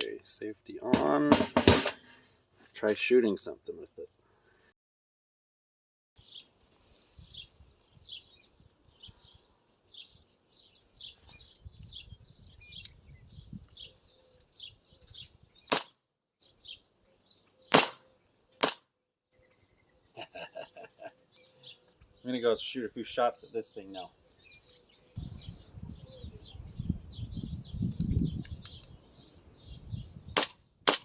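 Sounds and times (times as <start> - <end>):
airsoft pistol cracks: 15.7 - 16.0, 17.7 - 18.9, 30.4 - 31.0.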